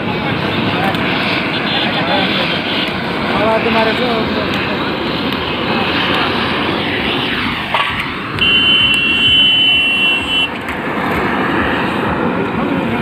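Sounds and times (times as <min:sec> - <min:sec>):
vehicle and machinery noise: 0:00.0 - 0:13.0
two-note horn: 0:08.4 - 0:10.6.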